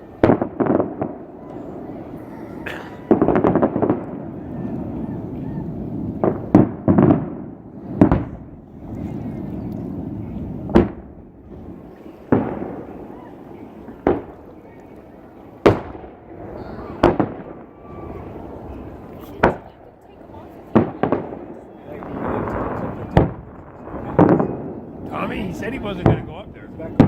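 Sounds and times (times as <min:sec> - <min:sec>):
firework shells booming: 0:00.0 - 0:27.0.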